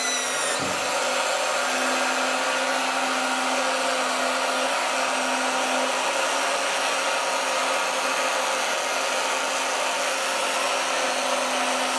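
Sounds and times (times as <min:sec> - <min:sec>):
small electric motor whirring: 0:00.0 - 0:07.2.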